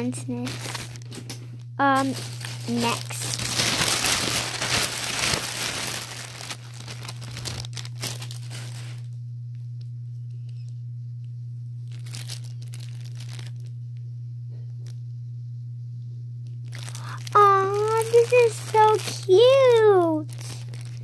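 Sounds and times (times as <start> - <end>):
plastic packaging crinkling and tearing: 0.0 - 9.1, 11.8 - 13.7, 16.5 - 21.0
steady low hum: 0.0 - 21.0.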